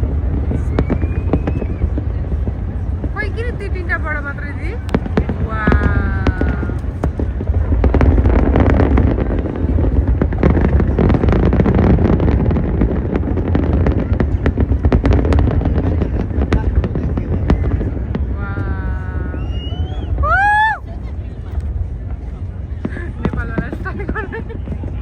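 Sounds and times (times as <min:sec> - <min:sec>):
crowd voices: 0:00.0 - 0:25.0
fireworks bangs and crackles: 0:00.0 - 0:25.0
low rumble: 0:00.0 - 0:25.0.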